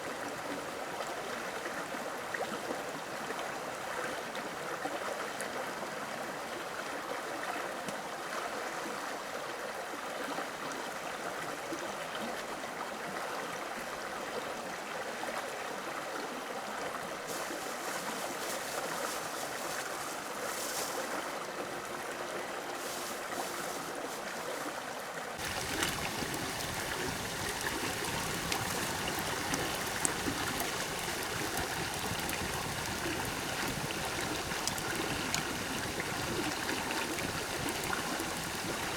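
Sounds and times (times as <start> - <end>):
flowing water rushing: 8.2 - 38.9.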